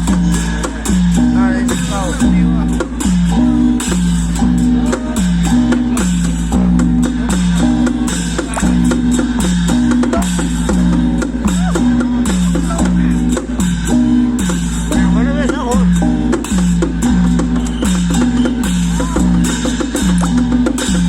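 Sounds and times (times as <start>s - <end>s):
steady drum strokes: 0.0s - 21.0s.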